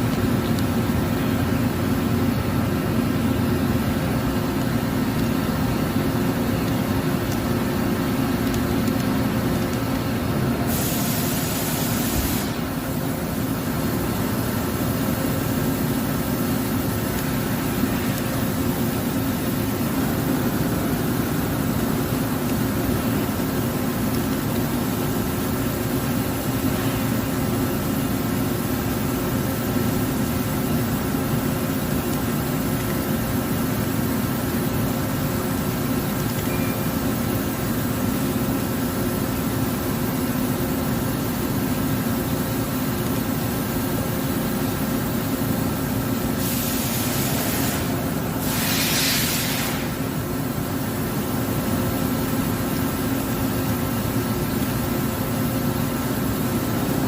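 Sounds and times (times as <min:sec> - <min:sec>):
hiss: 0:10.5 - 0:13.9, 0:24.8 - 0:28.0, 0:46.3 - 0:50.6.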